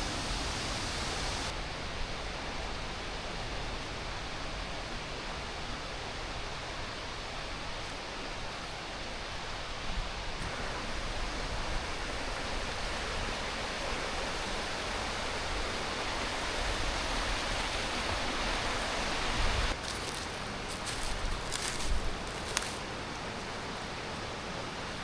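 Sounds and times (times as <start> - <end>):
waterfall roaring: 0.0 - 1.6, 10.4 - 21.6.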